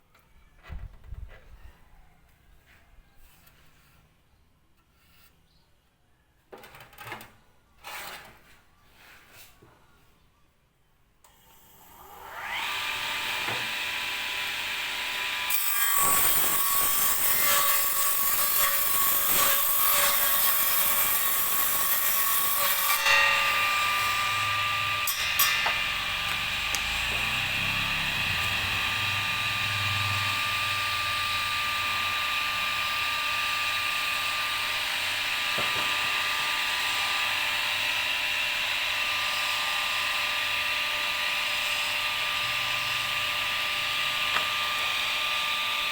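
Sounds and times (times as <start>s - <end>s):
saw cutting wood: 11.3s - 45.9s
circular saw whining: 11.9s - 45.9s.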